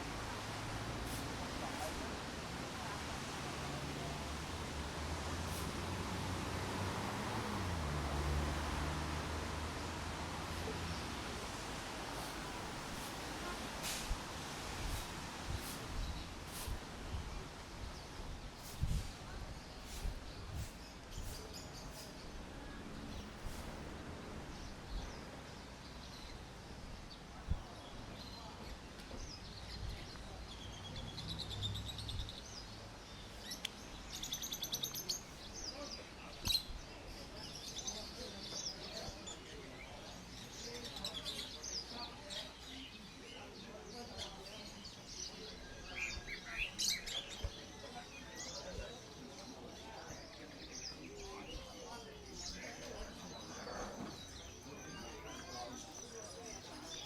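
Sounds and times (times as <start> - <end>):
steady background hiss: 0.0 - 31.7
faint background voices: 0.0 - 57.0
songbirds chirping: 0.0 - 57.0.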